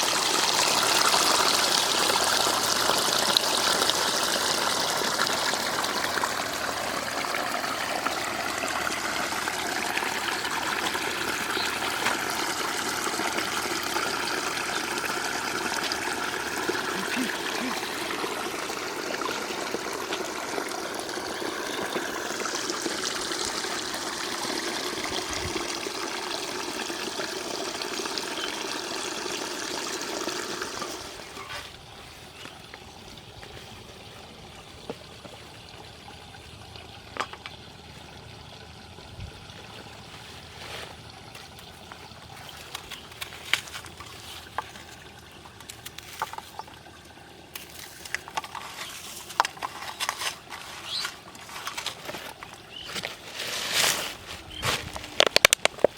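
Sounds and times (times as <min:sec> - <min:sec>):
water pouring and trickling: 0:00.0 - 0:55.9
small knocks or splashes: 0:37.0 - 0:37.6, 0:40.6 - 0:46.9, 0:47.5 - 0:55.9.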